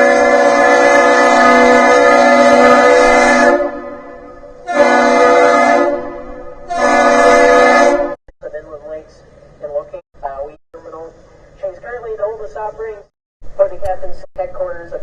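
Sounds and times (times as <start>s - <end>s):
ship horn blasts: 0.0s - 8.2s.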